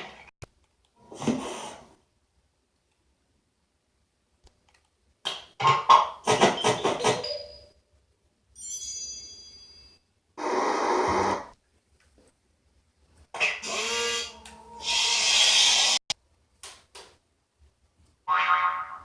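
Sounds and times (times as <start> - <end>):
high ringing chime: 8.6 - 10.1.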